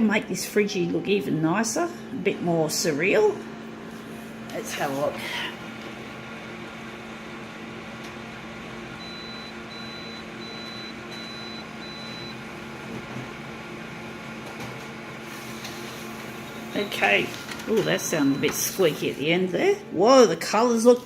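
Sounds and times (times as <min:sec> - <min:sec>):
scanner motor hum: 0:00.2 - 0:20.3.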